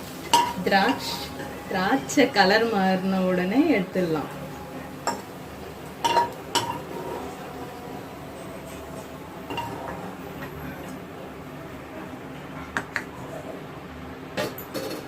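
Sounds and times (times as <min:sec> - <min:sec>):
frying hiss: 0:00.0 - 0:13.4
metal spoon clinking on a pan: 0:00.3 - 0:01.6, 0:06.0 - 0:07.0.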